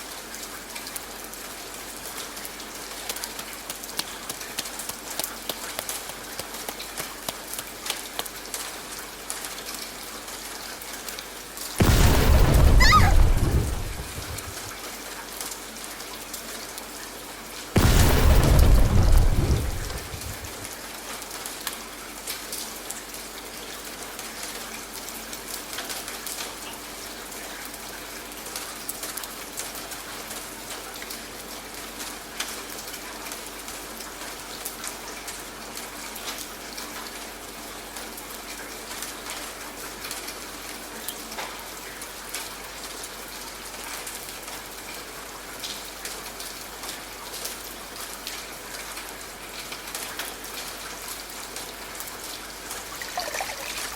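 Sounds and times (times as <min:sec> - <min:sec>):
steady rain falling: 0:00.0 - 0:53.9
thunder rumble: 0:11.8 - 0:14.7, 0:17.8 - 0:20.7.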